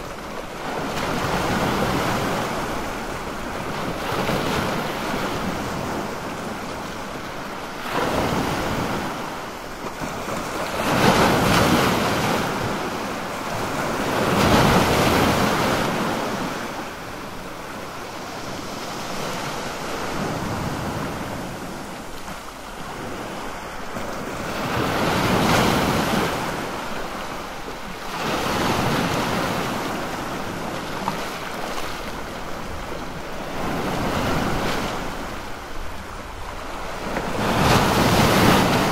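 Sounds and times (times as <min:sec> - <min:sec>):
sea waves washing in: 0:00.0 - 0:38.9.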